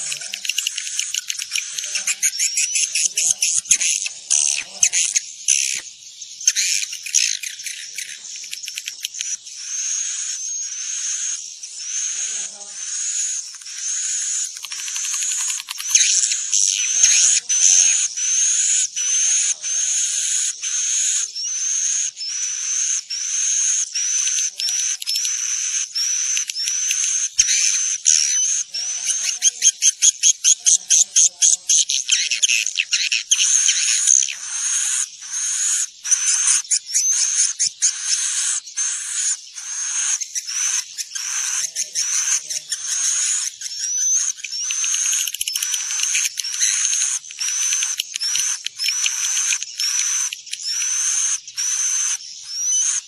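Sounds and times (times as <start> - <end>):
fast clicking trill: 0.0 - 5.8, 6.5 - 9.4, 13.4 - 17.1, 40.2 - 53.0
swiftlets chirping: 0.0 - 5.8, 6.5 - 9.6, 12.3 - 17.9, 32.2 - 53.0.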